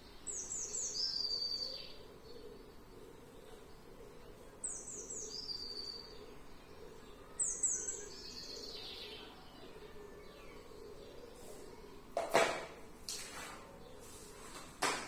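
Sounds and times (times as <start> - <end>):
faint steady background noise: 0.0 - 15.0
songbird singing: 0.0 - 15.0.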